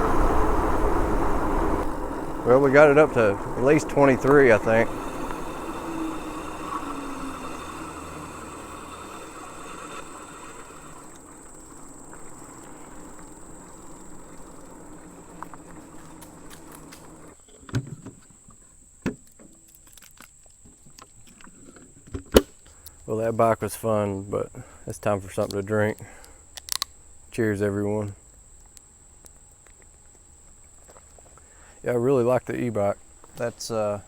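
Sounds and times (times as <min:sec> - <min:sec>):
faint motor whine: 0:00.0 - 0:17.4
steady high-pitched buzz: 0:00.0 - 0:17.4
wind and tyre noise: 0:00.0 - 0:17.4.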